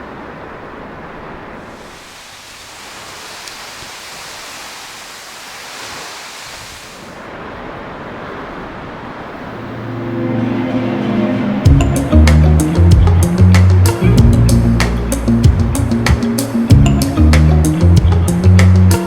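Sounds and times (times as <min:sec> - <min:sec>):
ocean surf breaking: 0:00.0 - 0:19.0
music: 0:09.6 - 0:19.0.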